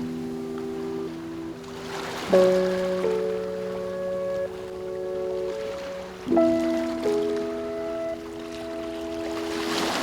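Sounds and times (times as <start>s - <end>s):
faint ocean waves: 0.0s - 10.0s
soft instrumental music: 0.0s - 10.0s.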